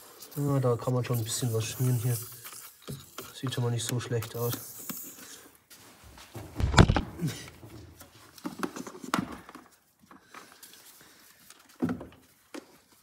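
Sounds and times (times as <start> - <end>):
loud thump: 6.5 - 7.2.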